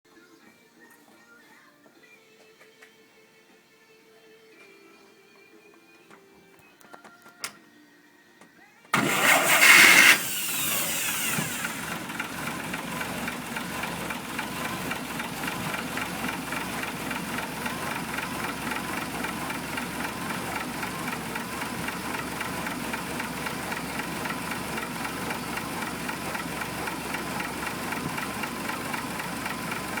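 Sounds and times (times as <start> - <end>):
truck engine idling: 9.0 - 30.0.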